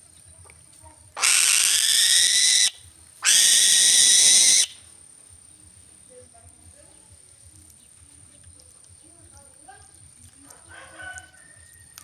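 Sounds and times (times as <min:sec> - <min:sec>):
bird of prey screeching: 0:01.2 - 0:04.8.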